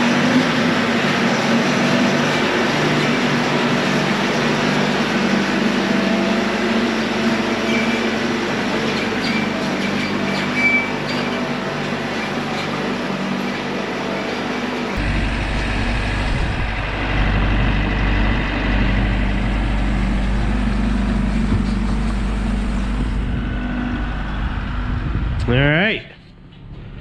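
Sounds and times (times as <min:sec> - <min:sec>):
diesel engine running steadily: 0:00.0 - 0:27.0.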